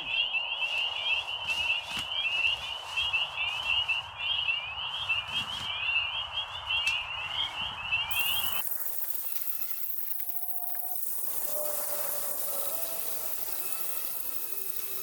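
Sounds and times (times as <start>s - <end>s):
frogs calling: 8.1s - 15.0s
pressure washer spraying hiss: 8.1s - 15.0s.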